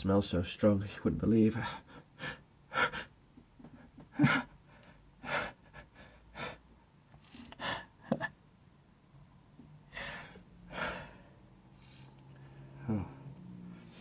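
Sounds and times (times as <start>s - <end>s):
man's sharp breaths: 9.9s - 14.0s.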